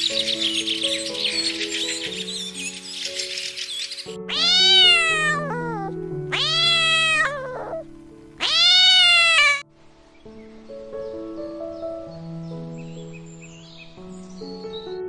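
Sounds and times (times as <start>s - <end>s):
soft background music: 0.0s - 15.0s
cat meowing: 4.2s - 9.6s.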